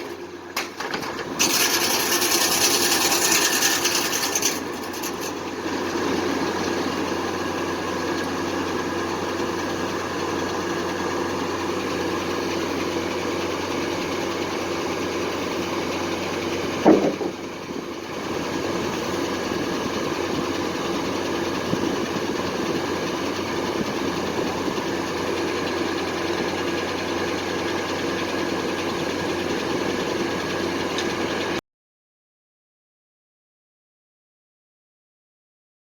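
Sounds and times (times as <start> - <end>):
sawmill engine running: 0.0 - 31.6
sharp knock: 16.8 - 17.4.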